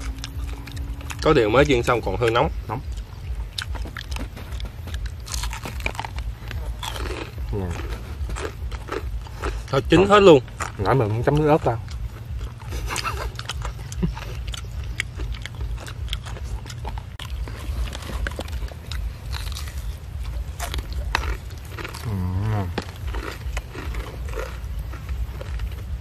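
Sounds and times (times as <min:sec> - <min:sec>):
crunching fried chicken: 0:00.0 - 0:26.0
person murmuring: 0:22.0 - 0:23.0.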